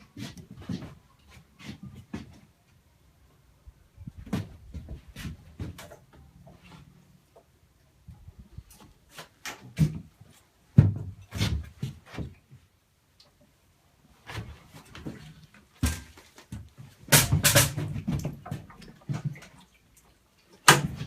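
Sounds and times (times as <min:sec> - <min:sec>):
knocks and thuds on plywood: 0:10.7 - 0:12.3, 0:15.8 - 0:18.6.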